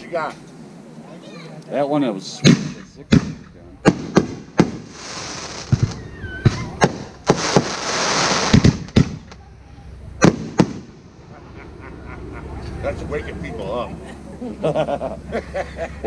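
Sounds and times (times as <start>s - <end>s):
fireworks booming: 2.4s - 9.4s, 10.2s - 11.3s
fireworks crackling hiss: 2.5s - 9.4s, 10.2s - 11.2s.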